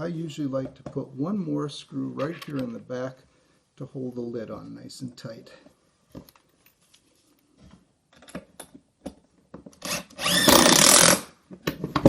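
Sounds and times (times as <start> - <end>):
power drill driving screw: 9.8 - 11.4.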